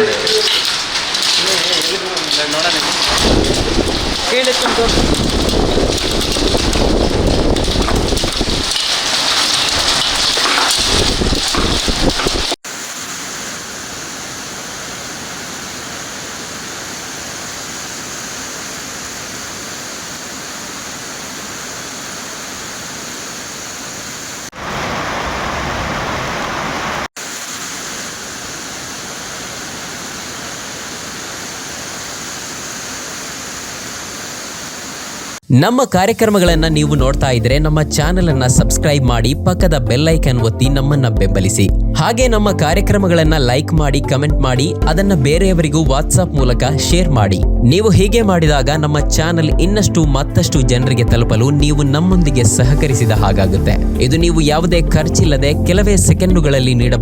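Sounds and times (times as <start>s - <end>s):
heavy rain pouring: 0.0s - 35.5s, 51.6s - 57.0s.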